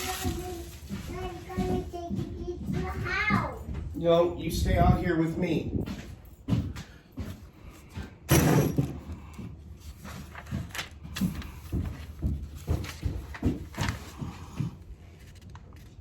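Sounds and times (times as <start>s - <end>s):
hard parts knocking and clattering: 0.1s - 4.3s, 5.8s - 14.8s
loud clunk: 8.3s - 9.0s.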